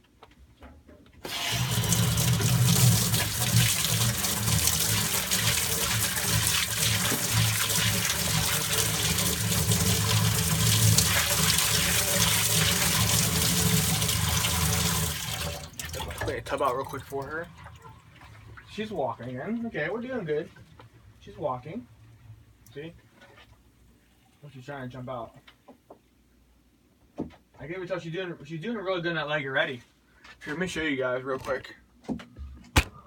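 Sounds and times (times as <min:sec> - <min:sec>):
tap water pouring into a tub: 0:01.2 - 0:19.6.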